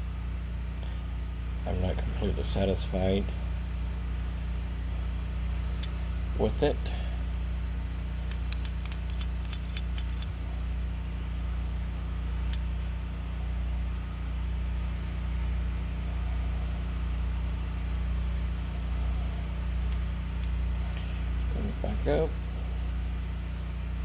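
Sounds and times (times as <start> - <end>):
steady low hum: 0.0 - 24.0
small metallic clicks of pliers: 8.1 - 10.3, 12.5 - 12.7.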